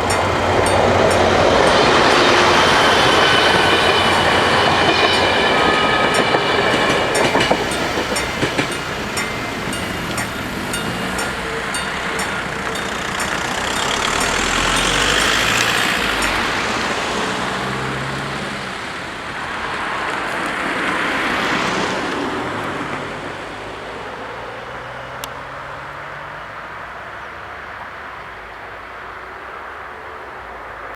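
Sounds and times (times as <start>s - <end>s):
level crossing warning bells: 0.0s - 19.9s
road vehicles driving over crossing: 0.0s - 27.4s.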